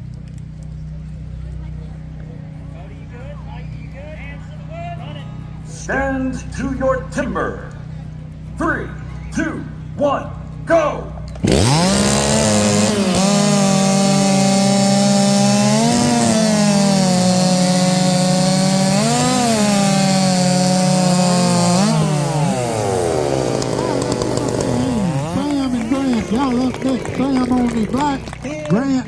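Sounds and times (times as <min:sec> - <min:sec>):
chainsaws cutting through log: 0:11.3 - 0:29.0.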